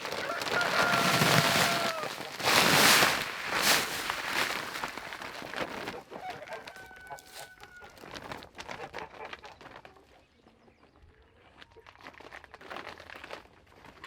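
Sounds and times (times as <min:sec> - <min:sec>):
rustling and clicks: 0:00.0 - 0:06.0
chickens clucking: 0:00.1 - 0:07.9.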